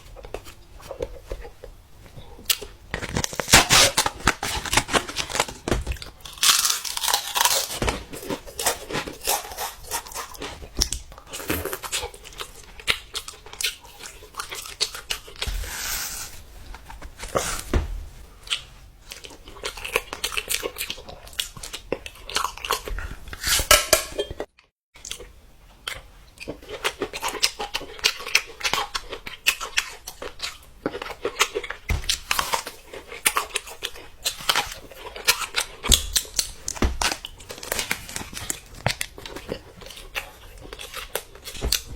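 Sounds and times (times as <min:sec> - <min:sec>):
crunching and chewing: 0:00.0 - 0:17.7, 0:18.3 - 0:41.9
tearing and crinkling: 0:02.9 - 0:10.4, 0:32.1 - 0:41.9.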